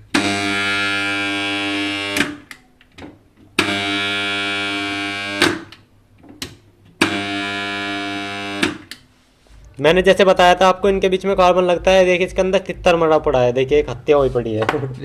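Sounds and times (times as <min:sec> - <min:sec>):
contactor buzzing with mains hum: 0:00.0 - 0:02.6, 0:03.5 - 0:05.9, 0:06.9 - 0:09.0.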